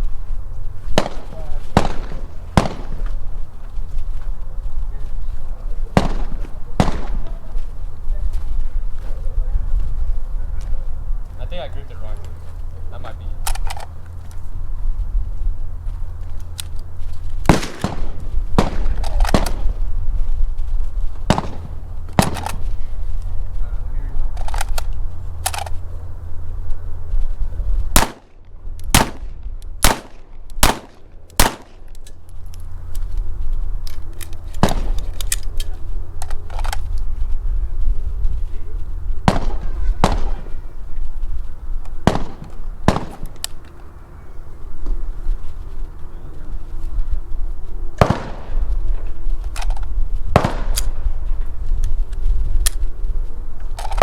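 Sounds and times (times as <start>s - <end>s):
steady low rumble: 0.0s - 54.0s
gunshots with echo: 1.0s - 3.2s, 5.9s - 7.6s, 17.5s - 19.8s, 21.3s - 22.7s, 28.0s - 28.3s, 28.9s - 31.8s, 34.6s - 35.2s, 39.2s - 40.6s, 42.0s - 43.4s, 48.0s - 48.7s, 50.3s - 51.0s.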